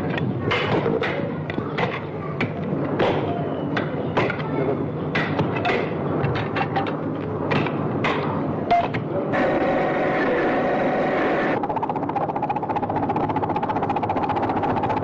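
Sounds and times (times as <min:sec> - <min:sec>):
knocks and clanks: 0:05.1 - 0:09.1
steady rumbling din: 0:05.1 - 0:15.0.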